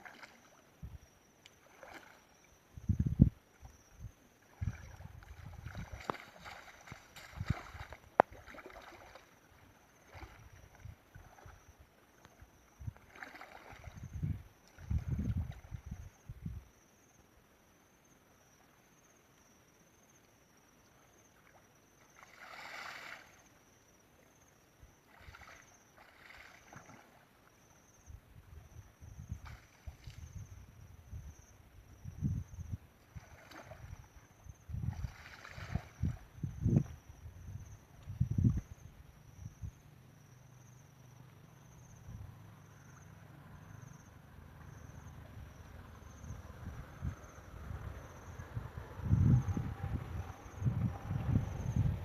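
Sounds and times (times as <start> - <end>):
water splashing and sloshing: 0.0 - 16.2, 20.8 - 28.0, 29.1 - 30.7, 32.5 - 38.6
insect chirping trill: 0.0 - 52.0.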